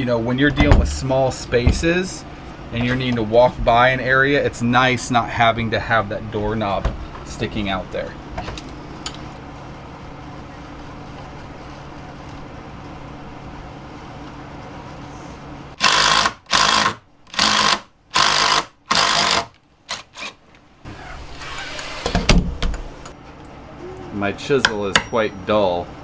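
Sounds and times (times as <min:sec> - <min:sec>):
power tool bursts: 0:15.8 - 0:19.5, 0:20.9 - 0:22.4.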